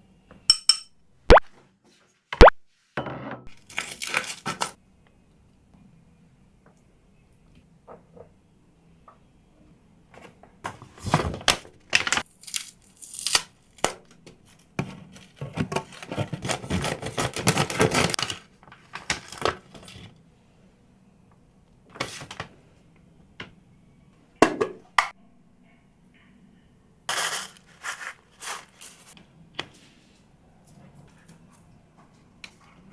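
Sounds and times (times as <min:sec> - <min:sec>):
packaging crinkling and tearing: 0:03.6 - 0:04.8, 0:15.2 - 0:19.9.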